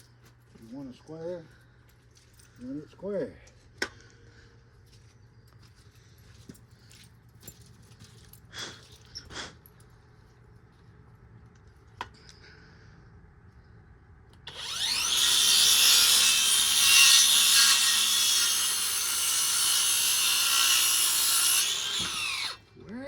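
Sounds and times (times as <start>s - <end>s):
electric saw cutting wood: 14.5s - 22.6s.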